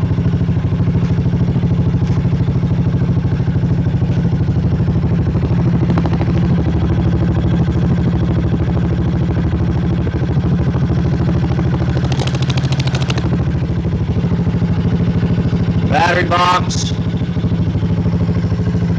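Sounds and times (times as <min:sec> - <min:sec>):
dirt bike engine idling: 0:00.0 - 0:18.9
rapid high rattling clicks: 0:11.8 - 0:13.6.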